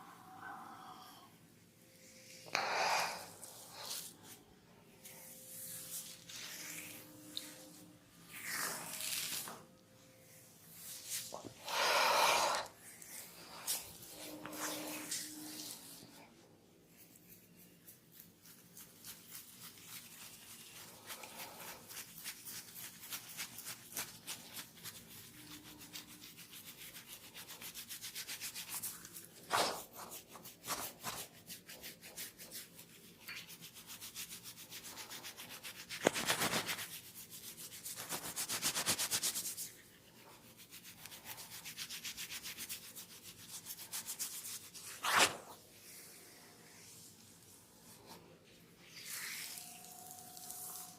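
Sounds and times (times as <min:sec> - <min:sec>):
hands rubbing skin and hair: 0:02.0 - 0:09.7, 0:10.4 - 0:16.2, 0:16.9 - 0:50.9.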